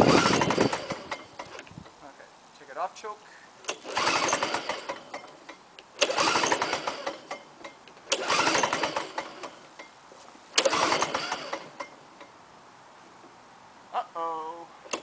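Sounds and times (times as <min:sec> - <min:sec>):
mower engine pull-start bursts: 0:00.0 - 0:01.7, 0:03.6 - 0:09.9, 0:10.5 - 0:12.0.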